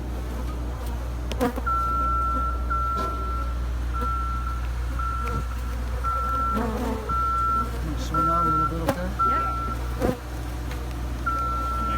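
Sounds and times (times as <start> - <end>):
steady low hum: 0.0 - 11.9
motion alarm beeping: 1.7 - 9.9, 11.2 - 11.9.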